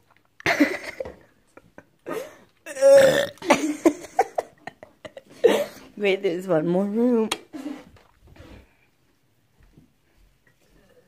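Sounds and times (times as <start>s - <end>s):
person burping loudly: 2.6s - 3.8s.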